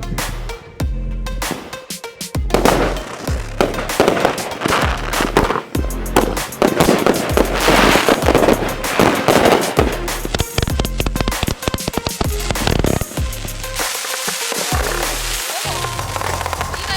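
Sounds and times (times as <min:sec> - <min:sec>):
music with repeating bass: 0:00.0 - 0:01.6, 0:02.3 - 0:14.0, 0:14.8 - 0:16.9
fireworks crackling and popping: 0:01.4 - 0:16.9.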